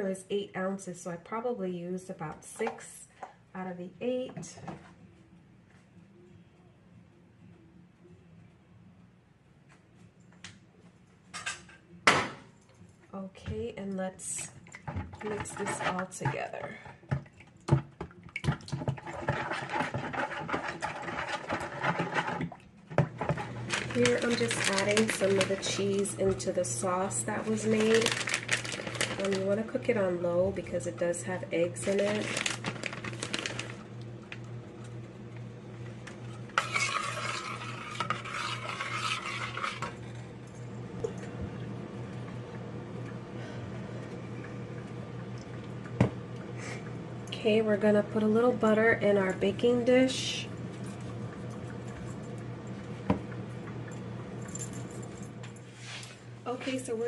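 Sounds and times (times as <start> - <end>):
wet mixing strokes: 14.6 - 30.1, 31.2 - 33.9, 36.1 - 40.1, 50.5 - 53.8, 55.6 - 56.4
spoon scraping a pot: 15.1 - 16.9, 18.8 - 22.6, 36.5 - 40.0
steady low hum: 19.3 - 57.0.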